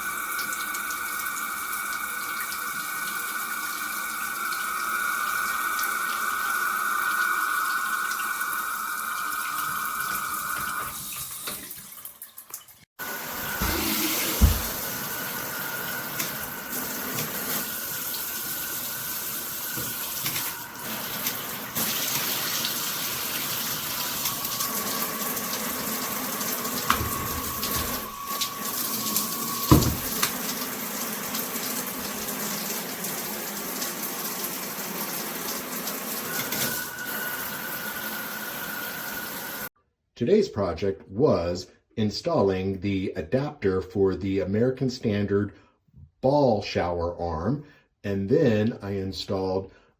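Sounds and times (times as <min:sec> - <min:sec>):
water spraying from shower head: 0:13.0 - 0:39.7.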